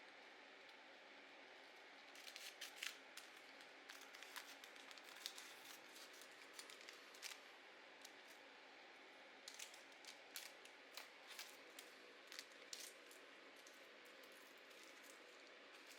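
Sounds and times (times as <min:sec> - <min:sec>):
scissors cutting paper: 0:02.2 - 0:07.4, 0:09.5 - 0:15.9.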